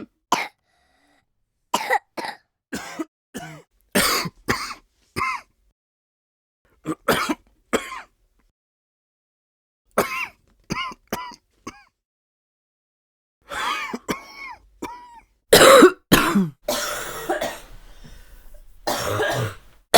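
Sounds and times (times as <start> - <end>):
raspy breathing: 0.6 - 1.2, 16.9 - 18.9
person coughing: 13.5 - 19.7.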